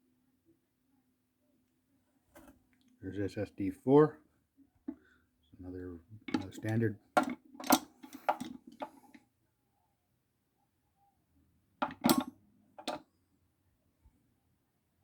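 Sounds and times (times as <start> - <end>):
screwdrivers clinking together: 6.3 - 8.9, 11.8 - 13.0.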